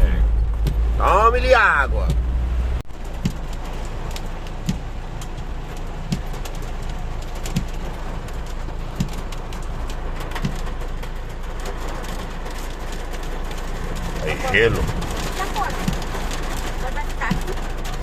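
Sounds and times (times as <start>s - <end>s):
soft low thump: 0.0s - 1.0s, 2.0s - 3.5s
heavy rain on a car: 0.0s - 18.0s
hailstones ticking: 2.9s - 18.0s.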